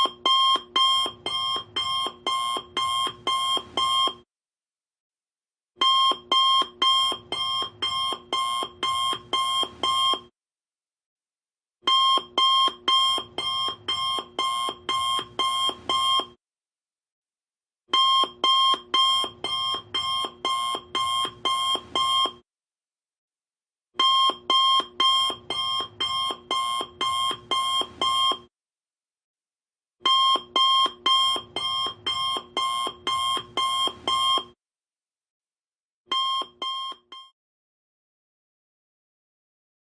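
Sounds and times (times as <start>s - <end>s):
alarm clock beeping: 0.0s - 4.2s, 5.8s - 10.3s, 11.9s - 16.3s, 18.0s - 22.4s, 24.0s - 28.4s, 30.1s - 34.6s, 36.1s - 37.3s.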